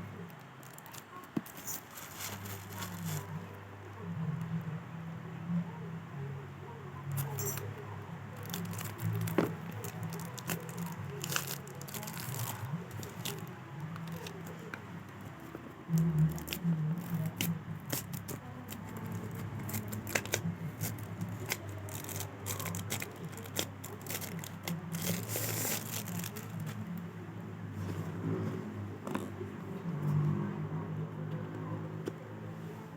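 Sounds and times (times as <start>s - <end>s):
plastic and paper crinkling: 0.2s - 3.6s, 8.3s - 27.0s.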